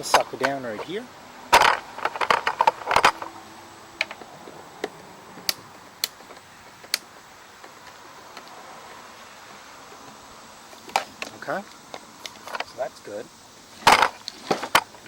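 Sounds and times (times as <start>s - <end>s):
tool and small parts clattering: 0.0s - 3.3s, 13.8s - 15.0s
sharp clicks: 4.0s - 8.6s.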